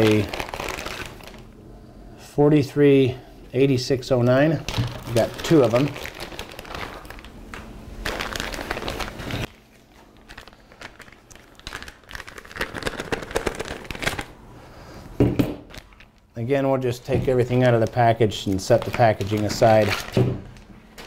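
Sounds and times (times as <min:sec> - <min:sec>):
plastic bags crinkling: 0:00.0 - 0:01.5, 0:04.3 - 0:14.4, 0:15.6 - 0:16.2, 0:17.3 - 0:21.0.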